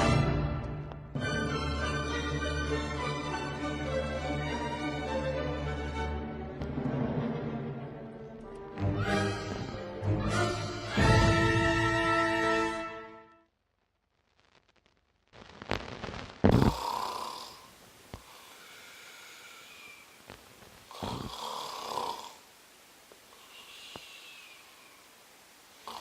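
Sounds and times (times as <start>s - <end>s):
person snoring: 9.0s - 11.5s, 16.4s - 20.1s, 20.9s - 22.4s.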